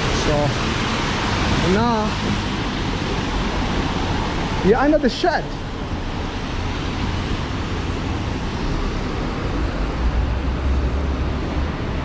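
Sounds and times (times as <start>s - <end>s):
rain falling: 0.0s - 8.7s
traffic: 0.0s - 12.0s.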